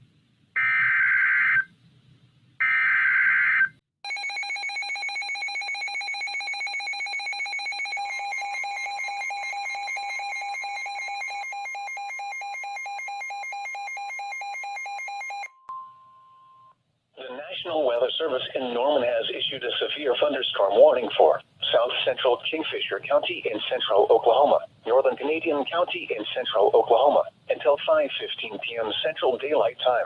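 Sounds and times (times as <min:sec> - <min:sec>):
rapid pulsing alarm beep: 0:04.1 - 0:15.5
steady weather alert tone: 0:17.2 - 0:30.0.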